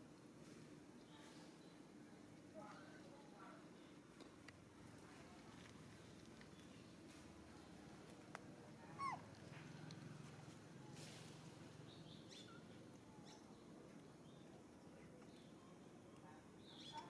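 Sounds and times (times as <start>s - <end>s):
monkey squealing: 9.0s - 9.2s.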